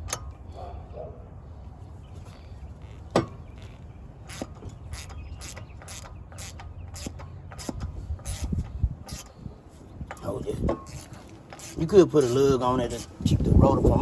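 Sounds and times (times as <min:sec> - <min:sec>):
ratchet wrench clicking: 0:03.6 - 0:09.3, 0:10.8 - 0:12.4.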